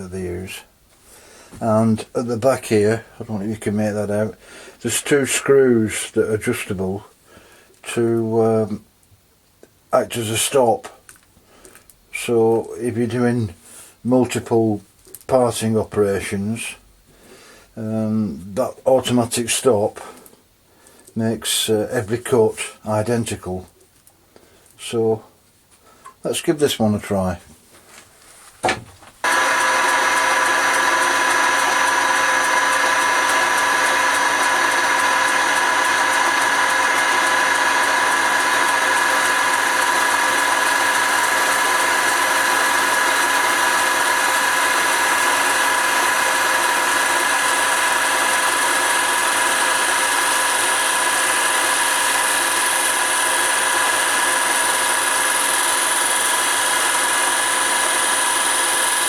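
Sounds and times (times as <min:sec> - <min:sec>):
blade cutting spinning wood: 0:00.0 - 0:00.6, 0:29.2 - 0:59.0
wood lathe whining: 0:00.0 - 0:00.6, 0:28.7 - 0:59.0.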